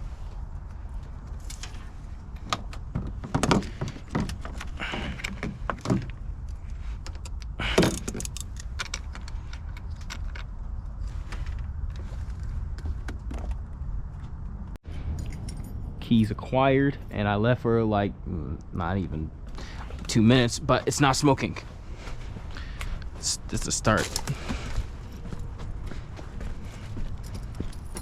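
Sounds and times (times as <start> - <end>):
keys jangling: 7.2 - 10.4, 15.0 - 15.9, 23.9 - 25.4, 27.0 - 28.0.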